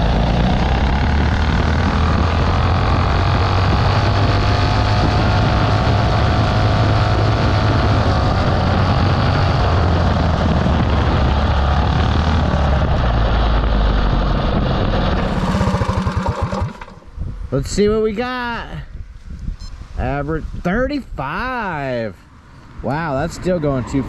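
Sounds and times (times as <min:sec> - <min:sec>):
mini bike engine at high revs: 0:00.0 - 0:13.8, 0:14.9 - 0:17.1.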